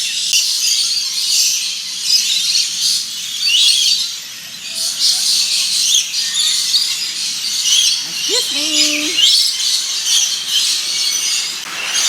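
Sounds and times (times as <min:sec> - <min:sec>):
parrots chattering and screeching: 0:06.8 - 0:10.1.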